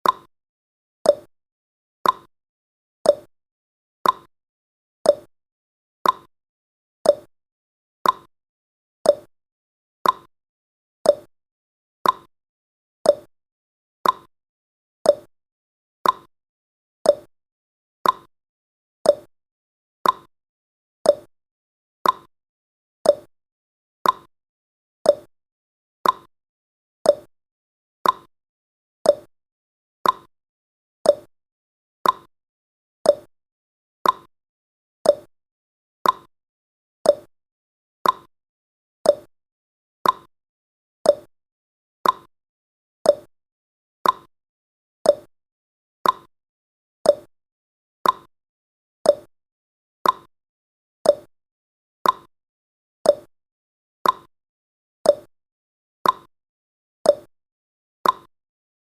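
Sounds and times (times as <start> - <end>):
clock-style ticking: 4.1 - 4.3, 6.1 - 6.3, 8.0 - 8.3, 10.0 - 10.3, 12.1 - 12.3, 14.0 - 14.3, 16.0 - 16.3, 18.0 - 18.3, 20.0 - 20.3, 22.0 - 22.3, 24.0 - 24.3, 26.0 - 26.3, 28.0 - 28.3, 30.0 - 30.3, 32.0 - 32.3, 33.1 - 33.3, 34.0 - 34.3, 35.1 - 35.3, 36.0 - 36.3, 37.1 - 37.3, 38.0 - 38.3, 39.1 - 39.3, 40.0 - 40.3, 41.1 - 41.3, 42.0 - 42.3, 43.1 - 43.3, 44.0 - 44.3, 46.0 - 46.3, 48.0 - 48.3, 49.1 - 49.3, 50.0 - 50.3, 52.0 - 52.3, 53.1 - 53.3, 54.0 - 54.3, 56.0 - 56.3, 58.0 - 58.3.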